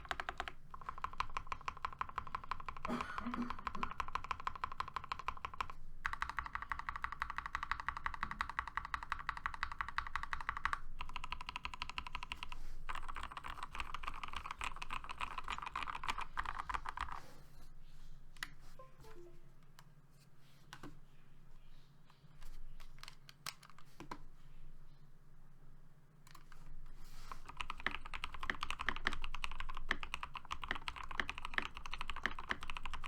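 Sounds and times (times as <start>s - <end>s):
mechanical keyboard typing: 0.0s - 17.2s, 27.4s - 33.0s.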